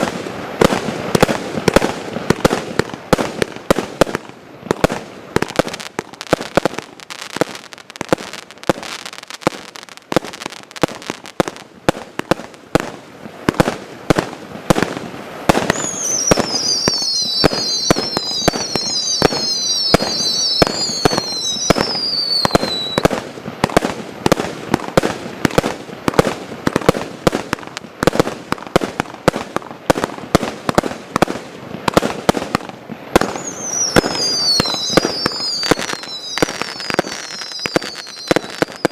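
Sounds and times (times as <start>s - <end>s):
fireworks shots and bangs: 0.0s - 6.8s, 9.5s - 38.9s
firework whistles falling in pitch: 15.5s - 23.1s, 33.2s - 38.9s.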